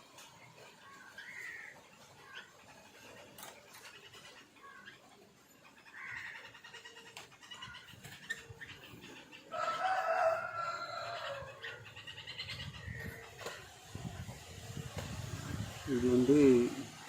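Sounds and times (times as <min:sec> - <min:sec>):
rooster crowing: 0:09.5 - 0:11.7.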